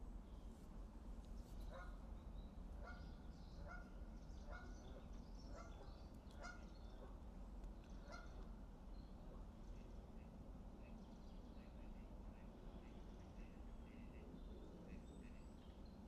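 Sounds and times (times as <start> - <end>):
geese honking faintly: 2.8 - 7.2, 8.0 - 8.4.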